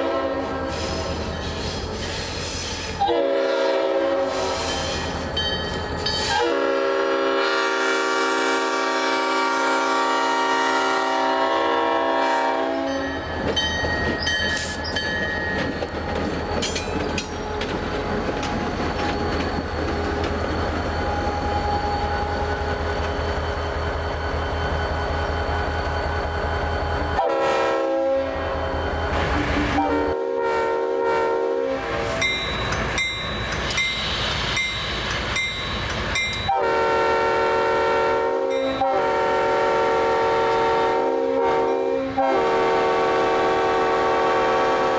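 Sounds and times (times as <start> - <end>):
locomotive air horn: 0.0 - 1.3, 2.9 - 5.2, 6.2 - 13.2, 27.2 - 32.3, 36.4 - 44.9
diesel locomotive engine rumble: 0.0 - 44.9.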